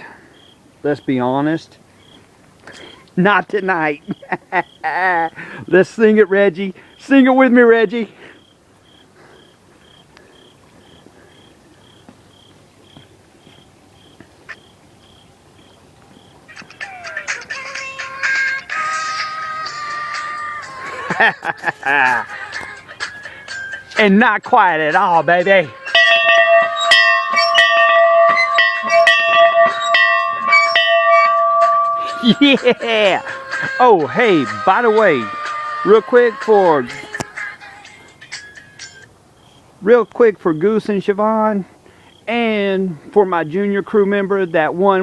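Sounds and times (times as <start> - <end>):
cricket chirping: 0.0 - 21.3, 25.6 - 33.6, 38.1 - 40.9, 41.9 - 42.7
bell ringing loudly: 25.8 - 33.5.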